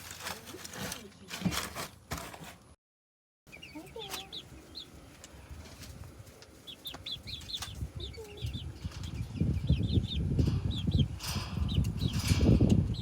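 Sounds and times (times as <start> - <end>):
chicks peeping: 3.5 - 13.0.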